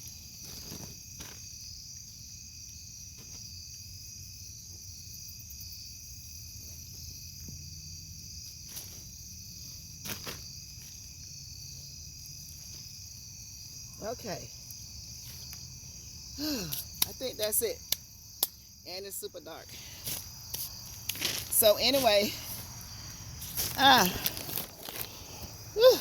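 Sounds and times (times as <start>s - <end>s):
crickets chirping: 0.0s - 26.0s
hands digging in soil: 19.7s - 26.0s.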